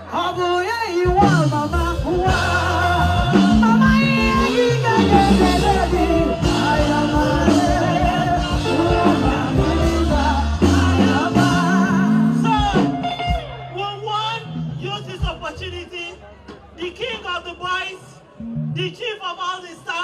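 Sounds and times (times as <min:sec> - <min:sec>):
loud music with singing: 0:00.0 - 0:14.5
sustained bass line: 0:01.0 - 0:16.8.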